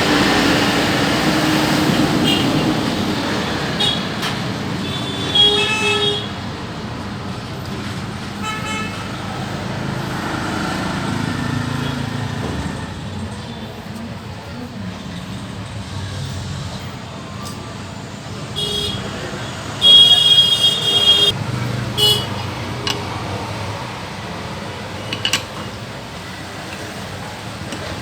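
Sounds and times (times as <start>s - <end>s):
road traffic noise: 0.0s - 28.0s
vehicle horn toots: 2.1s - 2.9s, 4.8s - 6.4s, 18.6s - 19.2s, 19.8s - 23.0s.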